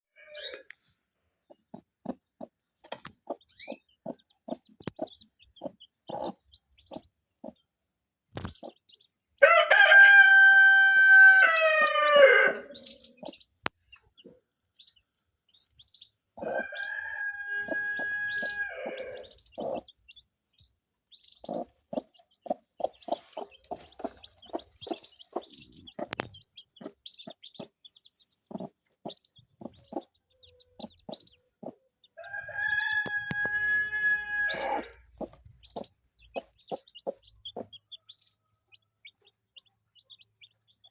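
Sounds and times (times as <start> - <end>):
chickens clucking: 1.4 - 7.6, 8.4 - 8.9, 12.1 - 14.4, 16.4 - 20.2, 21.3 - 40.9
rooster crowing: 9.4 - 12.8, 16.4 - 19.3, 32.2 - 35.0.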